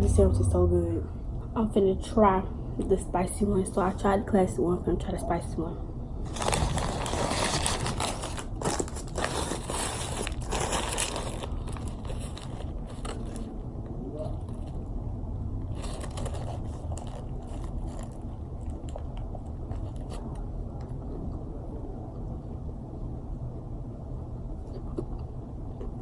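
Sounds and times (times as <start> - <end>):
low background rumble: 0.0 - 26.0
person chewing crispy sandwich: 6.3 - 13.6, 15.6 - 21.1.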